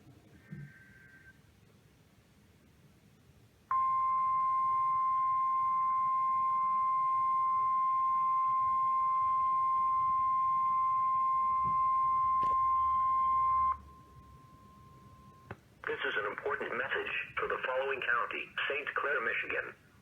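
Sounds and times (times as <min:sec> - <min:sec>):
steady high alarm tone: 0:03.7 - 0:15.5.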